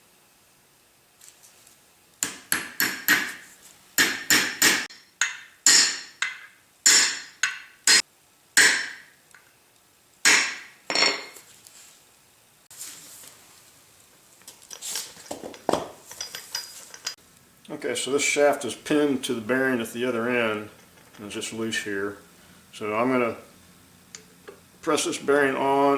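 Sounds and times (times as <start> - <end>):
hammer striking steel shaft: 4.0 - 8.0, 8.6 - 9.1, 10.3 - 11.3.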